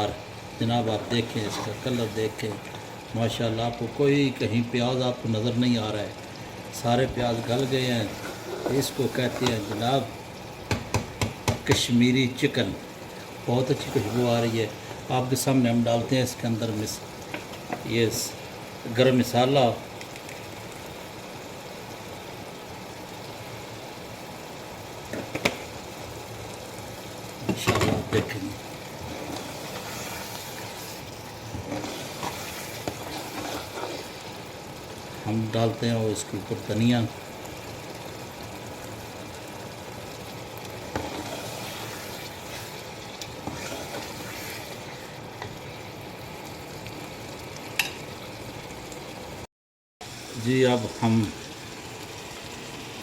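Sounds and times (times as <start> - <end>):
food sizzling in a pot: 0.0 - 53.0
knock: 10.7 - 11.7.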